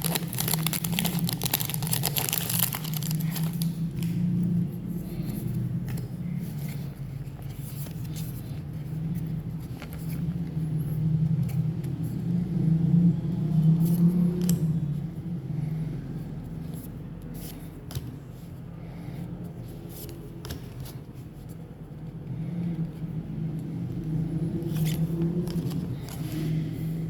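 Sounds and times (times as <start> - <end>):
foil pack tearing and crinkling: 0.0 - 3.7
steady low hum: 0.0 - 27.0.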